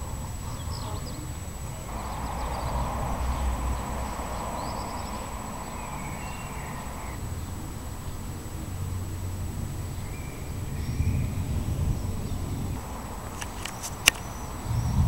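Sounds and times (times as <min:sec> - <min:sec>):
hiss: 0:00.0 - 0:15.0
steady low rumble: 0:00.0 - 0:15.0
bird chirps: 0:01.8 - 0:07.2.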